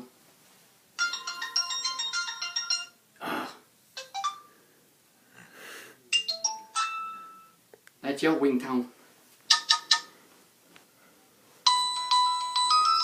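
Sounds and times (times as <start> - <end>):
phone ringtone beeping: 1.0 - 3.0, 4.0 - 4.5, 6.2 - 7.6, 9.5 - 10.1, 11.7 - 13.0
short breathy burst: 5.3 - 6.0.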